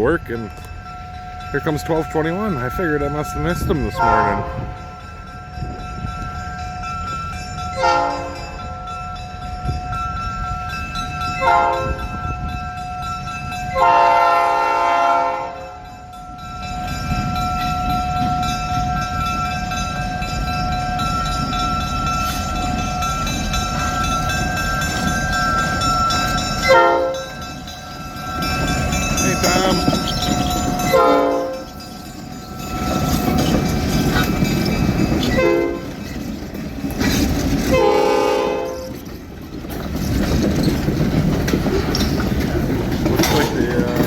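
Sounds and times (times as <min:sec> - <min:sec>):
low rumble of train rolling: 0:00.0 - 0:44.0
train horn blasts: 0:04.0 - 0:04.8, 0:07.8 - 0:08.5, 0:11.4 - 0:12.1, 0:13.8 - 0:15.8, 0:26.6 - 0:27.3, 0:30.9 - 0:31.7, 0:35.3 - 0:35.9, 0:37.7 - 0:38.9.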